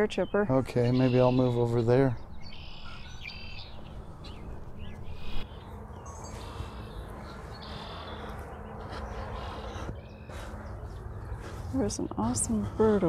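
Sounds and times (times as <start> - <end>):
small birds chirping: 0.0 - 13.0
steady rushing background: 2.2 - 13.0.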